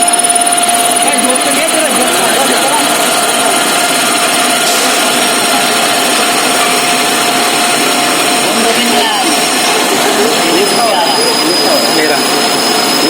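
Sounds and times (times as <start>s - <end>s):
metal lathe running: 0.0s - 13.0s.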